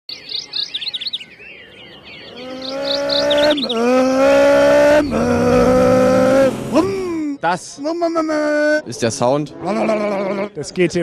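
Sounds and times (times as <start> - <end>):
birds chirping: 0.1 - 7.6
race car engine accelerating: 2.6 - 7.2.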